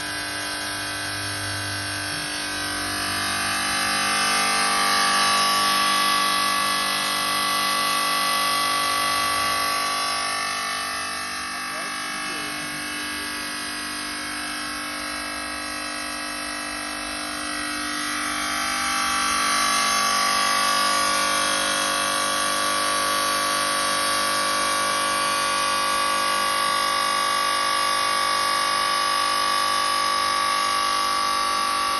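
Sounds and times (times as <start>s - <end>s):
cutting machine whine: 0.0s - 31.9s.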